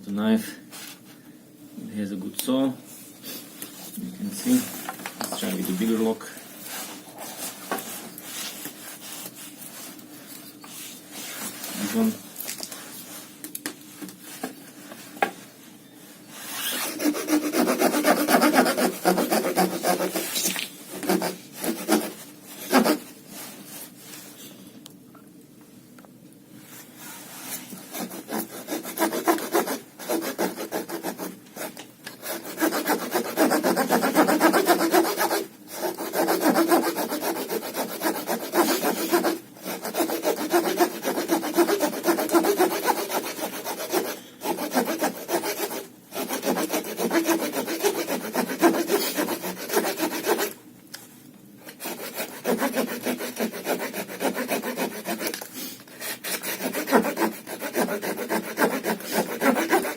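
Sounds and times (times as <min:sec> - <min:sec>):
hand saw rasping through log: 0:16.5 - 0:20.3, 0:21.0 - 0:23.0, 0:27.8 - 0:50.5, 0:51.7 - 0:55.3, 0:56.0 - 0:59.9.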